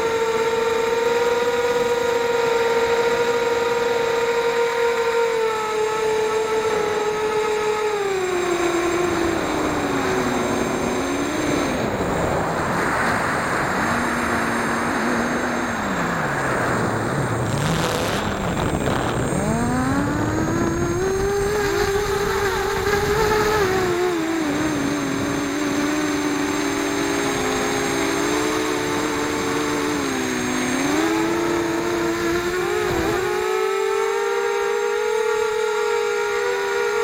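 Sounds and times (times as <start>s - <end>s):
drone motors and propellers whining: 0.0s - 37.0s
rushing wind: 5.6s - 33.6s.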